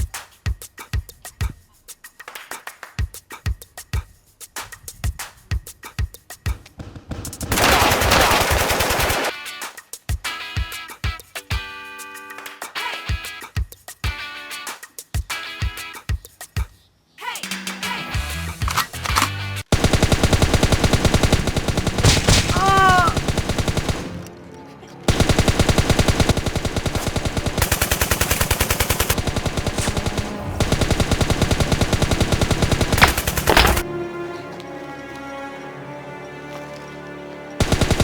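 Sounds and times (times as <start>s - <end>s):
rapid automatic gunfire: 7.5s - 9.3s, 19.7s - 24.3s, 25.1s - 33.9s, 37.6s - 38.0s
background music: 8.4s - 16.2s, 22.0s - 38.0s.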